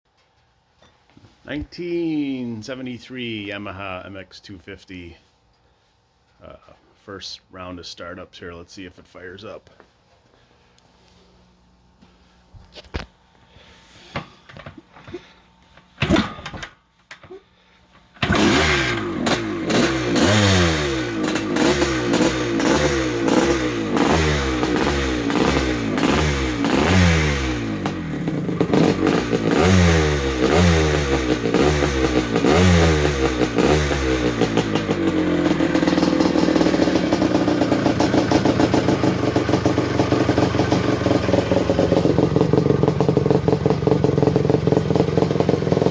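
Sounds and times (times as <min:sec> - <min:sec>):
two-stroke motorcycle engine revving: 0:16.0 - 0:16.6, 0:18.2 - 0:45.9.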